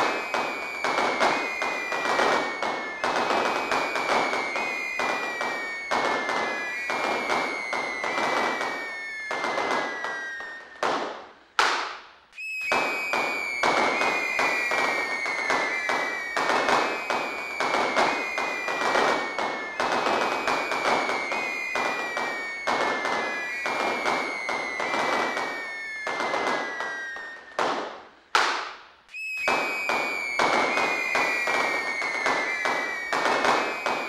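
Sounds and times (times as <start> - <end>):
sharp firework bang: 0.0 - 12.1, 26.1 - 28.9
falling firework whistles: 0.0 - 34.0
fireworks crackling: 0.0 - 34.0.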